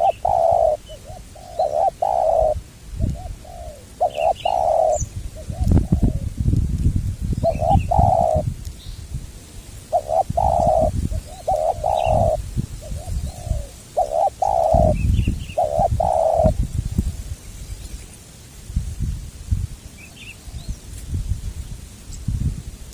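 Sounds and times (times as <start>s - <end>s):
dove cooing: 0.0s - 6.3s, 7.4s - 8.5s, 9.9s - 16.6s
low wind rumble: 0.0s - 22.9s.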